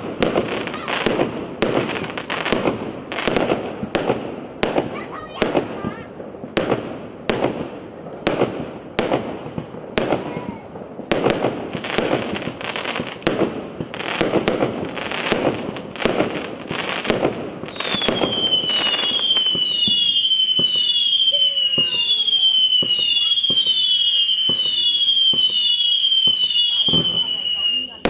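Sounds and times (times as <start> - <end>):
fireworks bangs with crackling: 0.0 - 28.0
whistling firework shells: 10.1 - 28.0.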